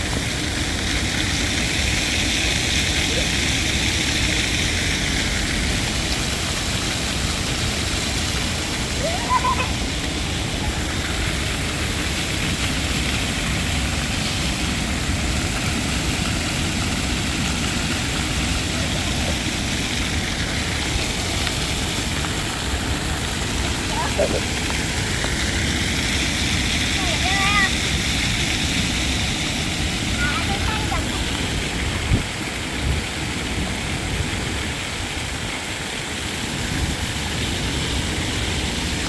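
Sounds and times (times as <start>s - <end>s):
water fountain splashing: 0.0s - 39.0s.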